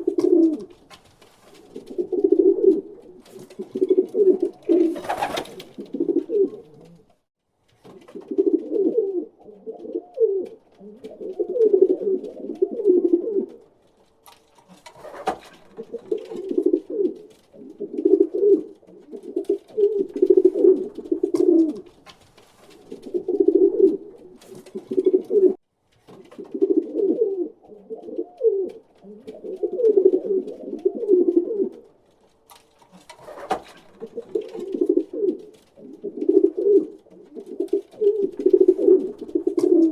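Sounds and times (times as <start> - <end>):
pigeon cooing: 0.0 - 0.8, 1.6 - 7.2, 8.1 - 13.6, 15.0 - 21.9, 22.8 - 25.6, 26.4 - 31.9, 33.0 - 39.9.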